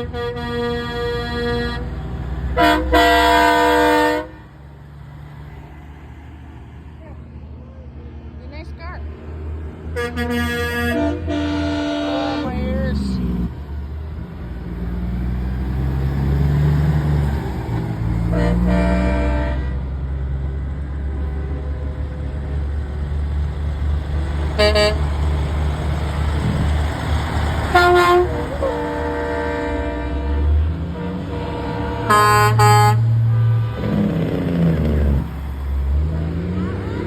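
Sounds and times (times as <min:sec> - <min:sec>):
truck air horns blasting: 0:00.0 - 0:04.6, 0:09.9 - 0:13.4, 0:18.2 - 0:20.2, 0:24.5 - 0:25.3, 0:27.6 - 0:35.3
diesel truck engines rumbling: 0:00.0 - 0:37.0.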